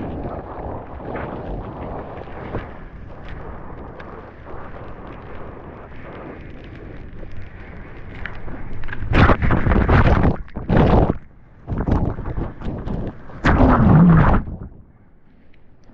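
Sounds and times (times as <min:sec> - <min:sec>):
small splashes and clicks: 0:01.4 - 0:13.8.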